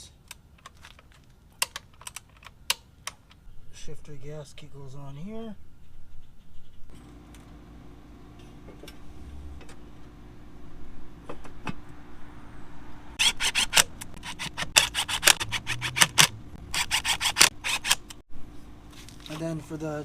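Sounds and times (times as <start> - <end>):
ratchet wrench clicking: 13.2 - 18.2.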